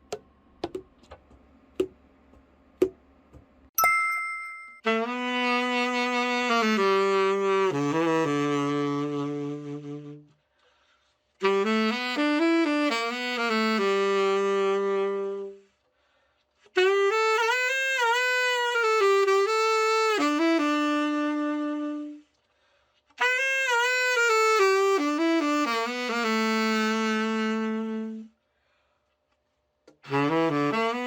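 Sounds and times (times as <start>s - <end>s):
tenor saxophone slow melody: 4.8s - 10.4s, 11.4s - 15.8s, 16.7s - 22.3s, 23.2s - 28.4s, 29.9s - 31.0s.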